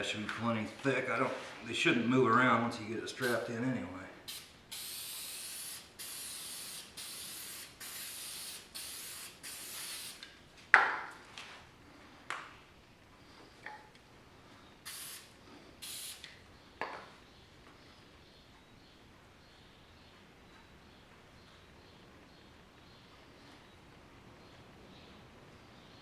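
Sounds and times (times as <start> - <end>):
aerosol can hissing bursts: 3.2 - 3.5, 4.2 - 10.3, 14.9 - 16.3.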